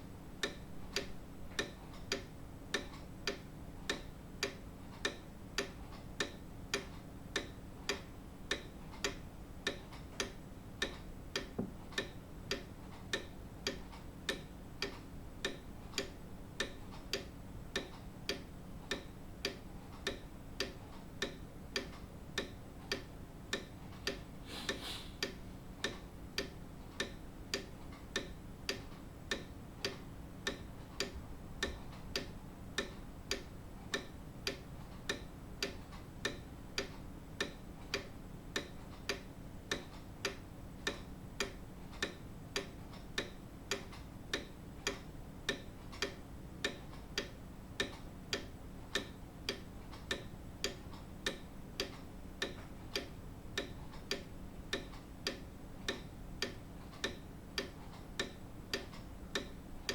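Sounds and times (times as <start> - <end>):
grandfather clock ticking: 0.4 - 24.3, 25.2 - 59.9.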